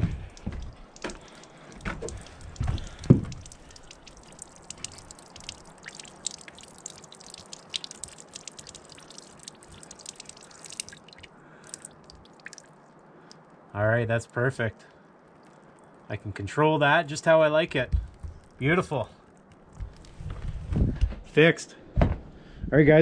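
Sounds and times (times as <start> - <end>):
water dripping rapidly: 0.0 - 13.4, 15.2 - 16.2, 17.1 - 20.2
handling knocks: 1.8 - 3.4.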